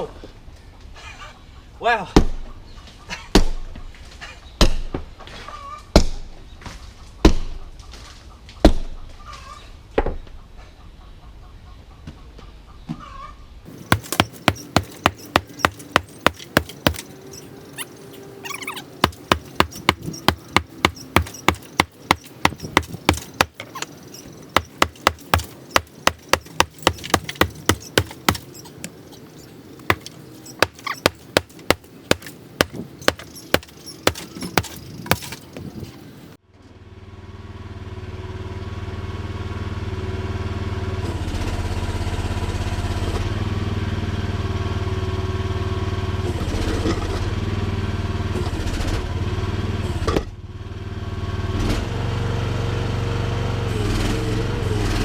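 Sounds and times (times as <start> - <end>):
mini excavator engine running: 13.7 - 35.8
sledgehammer blows on concrete: 13.7 - 35.8.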